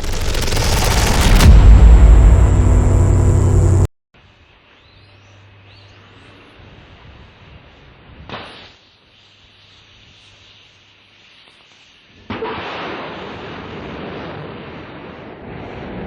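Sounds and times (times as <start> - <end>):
rocket launch crackling: 0.0 - 3.9
rush of noise: 0.0 - 3.9.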